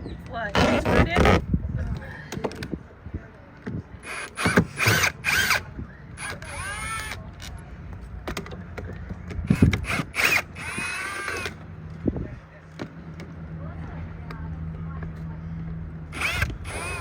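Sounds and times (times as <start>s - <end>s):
power drill whining: 4.0s - 7.2s, 9.5s - 11.6s, 16.1s - 17.0s.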